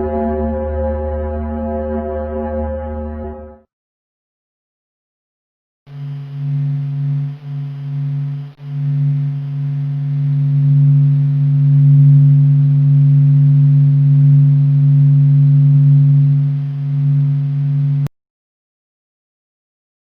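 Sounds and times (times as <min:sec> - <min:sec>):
faint higher tone: 0:05.9 - 0:18.1
loud steady low hum: 0:05.9 - 0:18.1.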